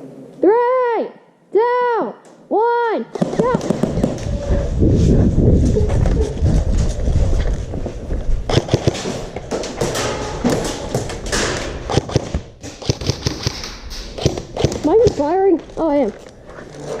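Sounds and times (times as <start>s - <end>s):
microphone handling rumble: 3.9s - 8.5s
airsoft guns firing: 8.5s - 9.1s, 9.8s - 15.3s.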